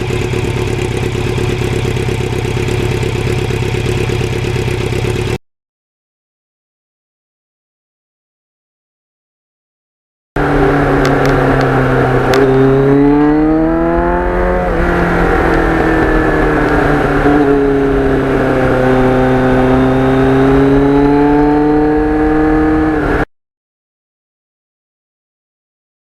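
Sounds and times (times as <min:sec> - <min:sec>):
motorcycle engine accelerating: 0:00.0 - 0:05.4, 0:10.4 - 0:23.3
wind rumble: 0:10.4 - 0:23.2.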